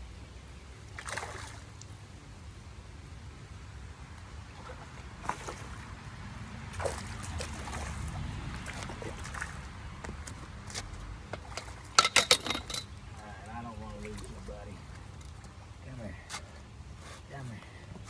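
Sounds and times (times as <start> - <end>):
creek water trickling: 0.1 - 18.0
sharp water splashes: 0.9 - 1.9, 4.5 - 10.0
low rumble: 7.2 - 11.6.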